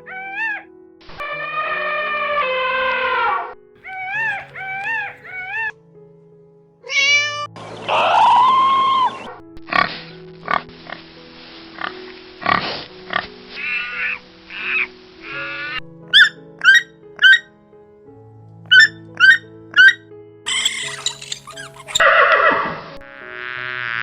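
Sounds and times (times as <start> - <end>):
background music: 0.0 - 24.0
animal calls: 3.8 - 5.7, 15.5 - 17.4, 18.7 - 22.3.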